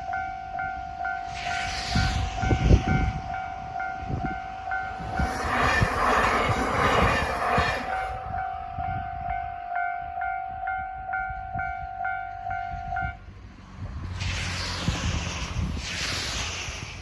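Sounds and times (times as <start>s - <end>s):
level crossing warning bell: 0.0s - 1.4s, 2.5s - 5.4s, 7.6s - 13.2s
passing train: 0.0s - 17.0s
wind noise: 0.0s - 17.0s
steady tone: 0.8s - 12.9s.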